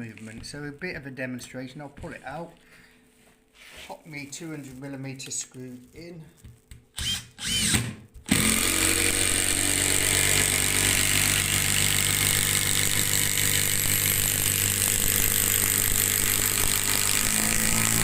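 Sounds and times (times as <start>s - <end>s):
impact driver hammering: 7.0s - 18.0s.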